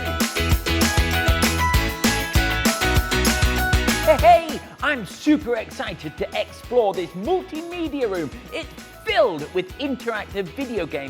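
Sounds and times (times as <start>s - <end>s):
upbeat music with drum beat: 0.0s - 11.0s.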